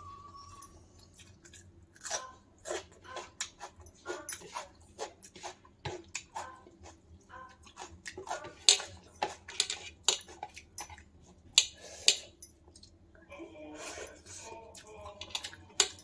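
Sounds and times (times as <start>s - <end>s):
person chewing with mouth clicks: 1.0s - 9.3s.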